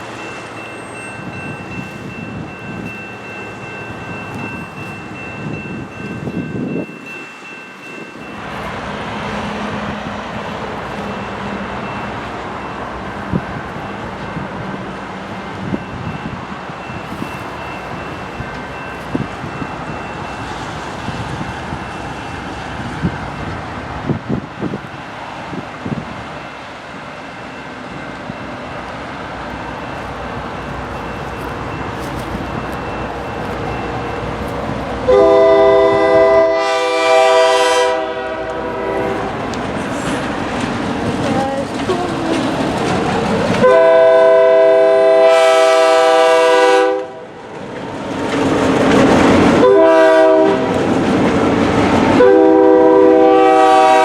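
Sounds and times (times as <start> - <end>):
locomotive chime horn: 29.9 - 39.6, 43.6 - 47.4, 49.6 - 50.8, 52.1 - 54.0.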